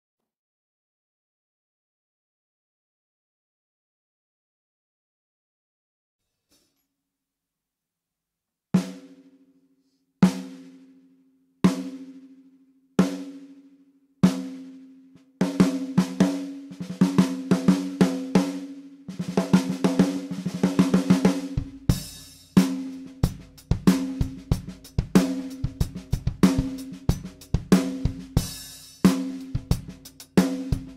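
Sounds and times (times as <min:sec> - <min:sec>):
snare drum strokes and rolls: 0:15.4 - 0:21.7
bass drum beat: 0:19.2 - 0:30.9.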